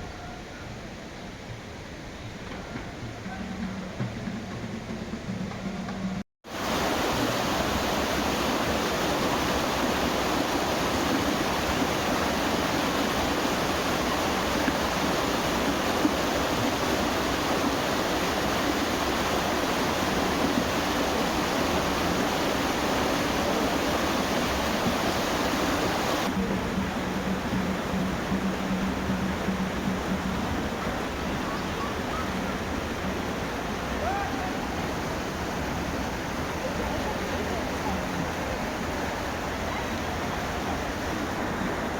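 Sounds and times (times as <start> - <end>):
flowing water rushing: 0.0 - 41.9.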